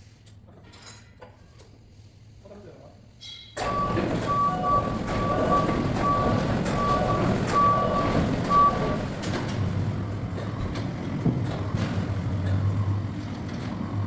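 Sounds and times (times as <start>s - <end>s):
reversing alarm beeping: 3.6s - 9.4s
heavy vehicle engine running: 3.6s - 14.0s.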